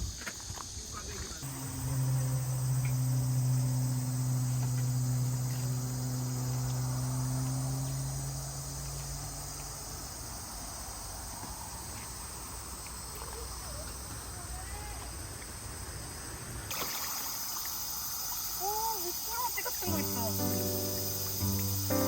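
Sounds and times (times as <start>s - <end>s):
crickets chirping: 0.0s - 22.0s
low steady hum: 1.4s - 8.6s.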